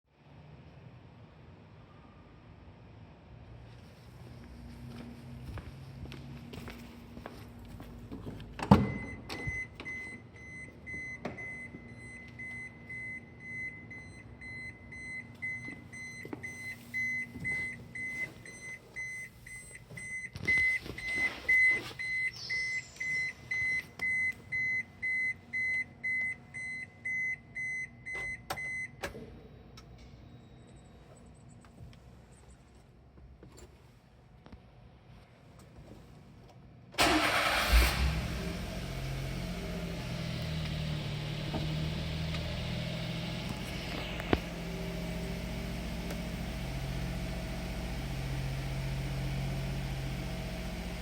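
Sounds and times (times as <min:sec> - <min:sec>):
high-tone electronic warning beeps: 0:08.9 - 0:28.9.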